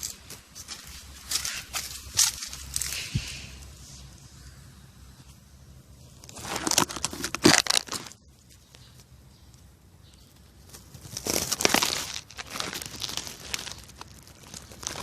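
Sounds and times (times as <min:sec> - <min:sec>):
crinkling crumpling rustle: 0:00.0 - 0:03.5, 0:06.1 - 0:09.2, 0:10.1 - 0:15.0.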